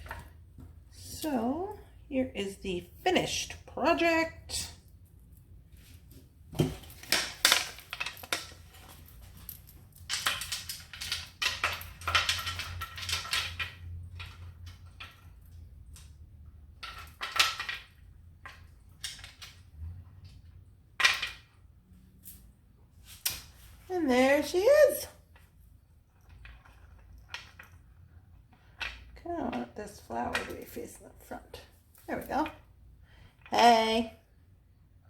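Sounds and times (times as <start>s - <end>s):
beaded necklace clicking and rattling: 7.1s - 16.1s.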